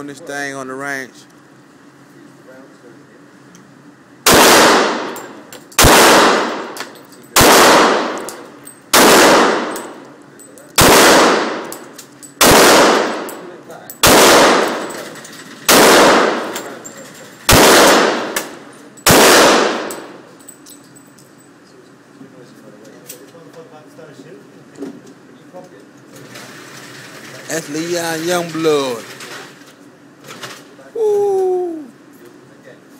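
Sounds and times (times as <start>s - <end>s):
gunshots: 4.3s - 6.8s, 7.4s - 10.0s, 10.8s - 11.8s, 12.4s - 13.4s, 14.0s - 15.1s, 15.7s - 16.8s, 17.5s - 20.1s.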